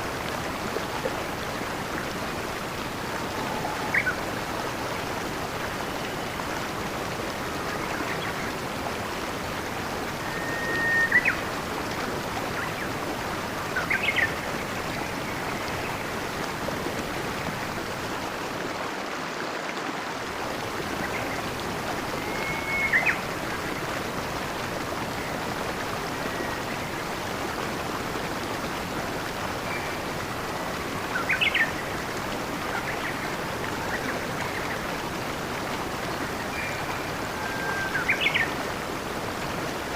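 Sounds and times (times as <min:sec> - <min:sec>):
stream water flowing: 0:00.0 - 0:39.9
songbird whistling: 0:10.3 - 0:11.4, 0:22.2 - 0:23.2.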